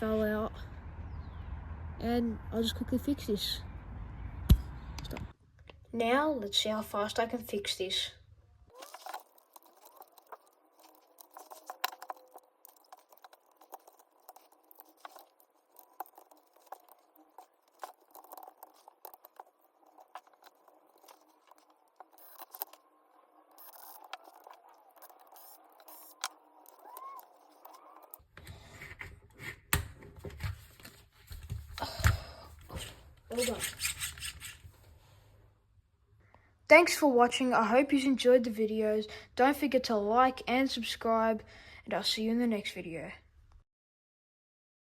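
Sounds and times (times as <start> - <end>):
small parts clicking and scraping: 8.8 - 29.7, 31.3 - 34.9.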